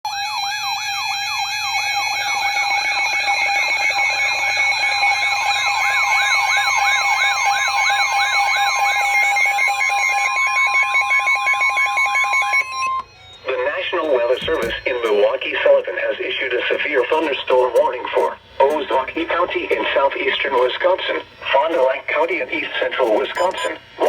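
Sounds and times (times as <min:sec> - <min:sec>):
falling siren-like alert tone: 0:00.1 - 0:15.4
steady single alarm tone: 0:00.1 - 0:15.8
steady beeping tones: 0:01.8 - 0:24.0.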